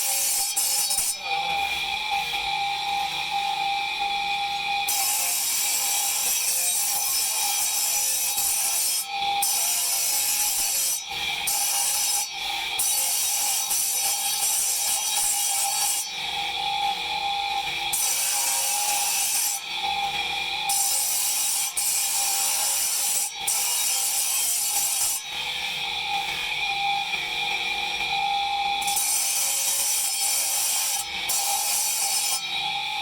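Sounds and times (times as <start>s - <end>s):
tool scraping marble: 28.8s - 32.7s.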